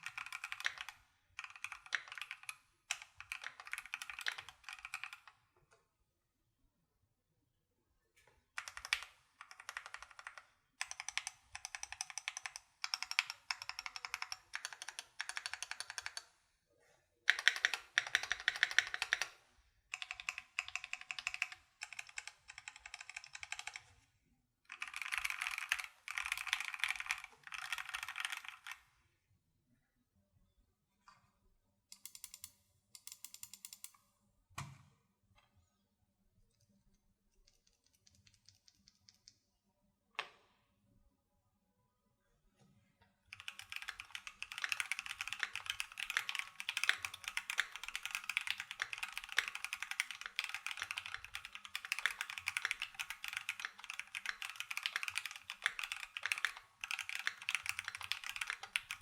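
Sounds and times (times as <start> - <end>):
typing on mechanical keyboard: 0.0 - 5.4, 8.6 - 16.3, 17.3 - 24.0, 24.7 - 28.9, 32.0 - 33.9, 37.3 - 39.4, 43.3 - 59.0.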